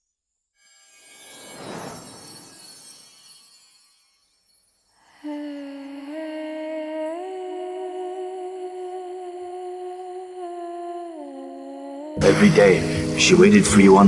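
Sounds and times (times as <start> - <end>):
person humming a mournful melody: 5.2 - 14.0.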